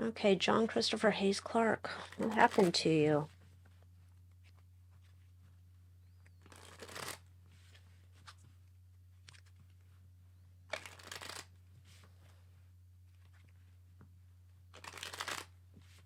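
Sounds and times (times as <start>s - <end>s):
low electrical hum: 0.0s - 16.0s
cards being shuffled: 2.0s - 5.3s, 6.3s - 8.6s, 9.2s - 9.8s, 10.7s - 12.1s, 13.1s - 13.6s, 14.7s - 16.0s.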